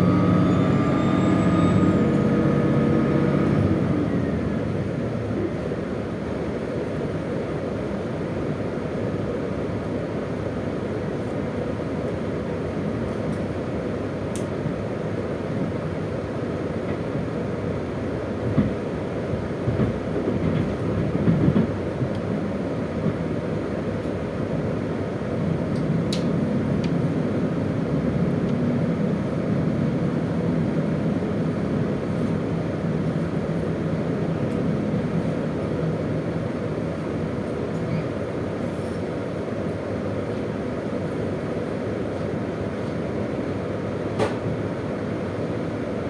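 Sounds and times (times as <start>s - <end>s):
diesel engine hum: 0.0s - 6.7s, 23.4s - 46.0s
wheels rumbling on rails: 0.0s - 8.5s, 9.6s - 46.0s.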